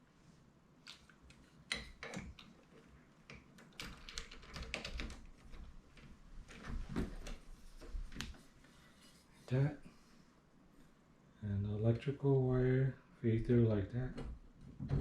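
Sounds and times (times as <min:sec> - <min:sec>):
door lock parts clicking: 0:03.6 - 0:05.6.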